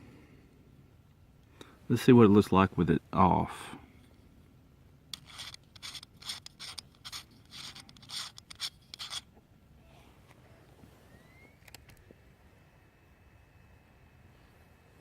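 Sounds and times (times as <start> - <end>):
metal lens scraping as unscrewed: 5.1 - 9.3.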